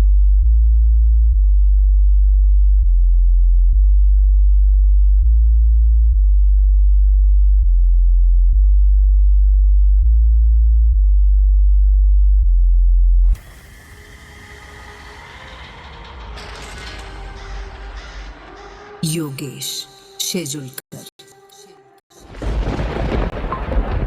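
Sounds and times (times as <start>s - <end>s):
deep sine-wave bass tones: 0.0s - 13.4s
hiss-like sound: 13.3s - 16.4s.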